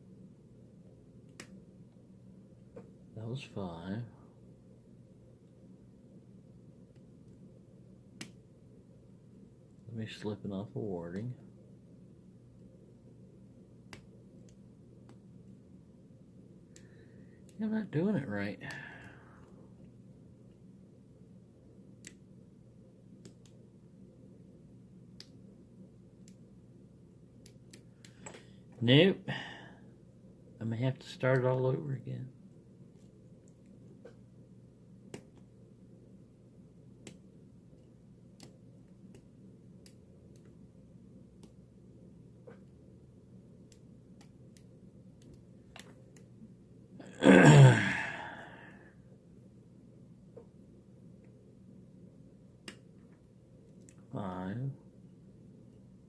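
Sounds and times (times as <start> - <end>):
person sighing: 29.3 - 29.8, 47.0 - 49.0.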